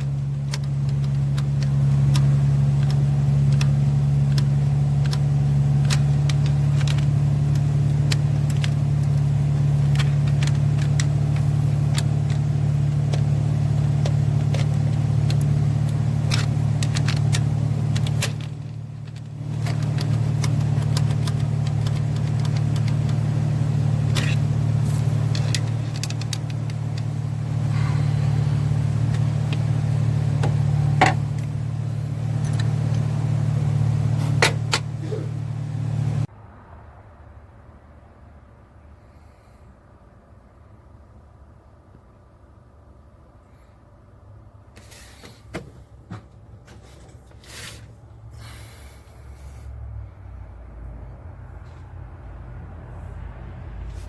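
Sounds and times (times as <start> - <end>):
engine idling: 0.0 - 36.3, 44.6 - 54.0
engine valvetrain ticking: 0.0 - 36.3.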